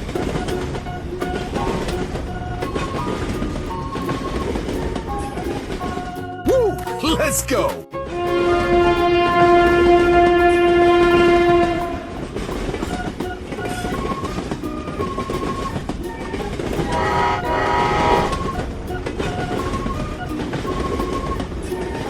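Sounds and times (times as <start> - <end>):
train wheels clickety-clack: 0.0 - 6.3, 8.1 - 22.0
train horn: 8.0 - 12.5, 16.9 - 18.7.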